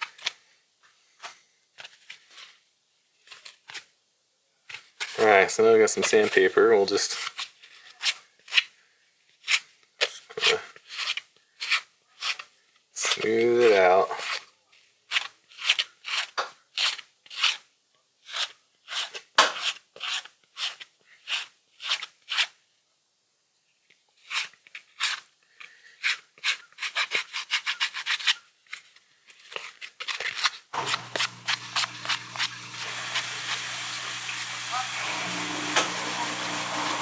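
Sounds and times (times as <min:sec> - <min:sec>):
sandpaper scraping strokes: 0:30.8 - 0:37.0.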